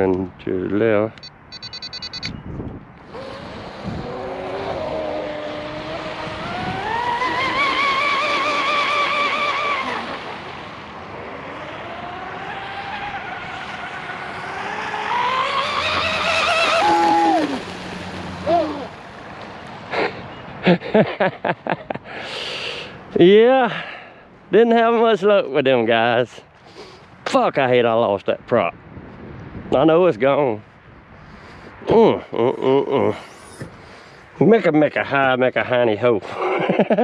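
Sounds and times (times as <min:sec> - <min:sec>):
sharp clicks: 0:01.2 - 0:02.4
model boat motor whining: 0:03.0 - 0:19.2
hull hissing on water: 0:03.1 - 0:10.7, 0:12.4 - 0:19.1.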